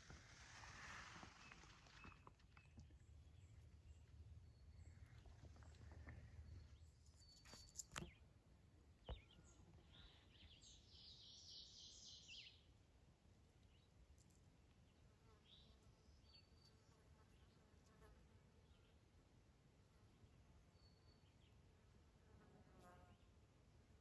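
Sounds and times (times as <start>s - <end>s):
bird chirping: 1.4s - 8.2s, 9.0s - 12.7s.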